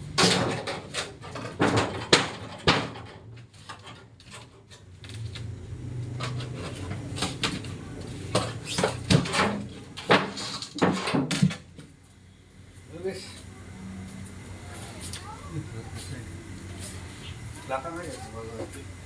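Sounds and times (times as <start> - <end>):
parts knocking and clattering: 0.0 - 12.0.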